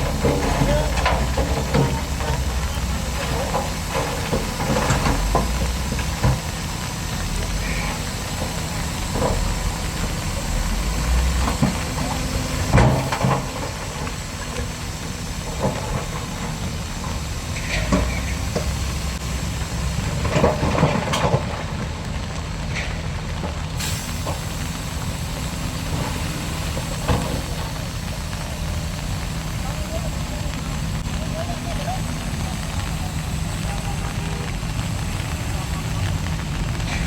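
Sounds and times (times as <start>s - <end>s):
metal clanks and knocks: 0.0s - 6.6s
heavy diesel machinery running: 0.0s - 37.0s.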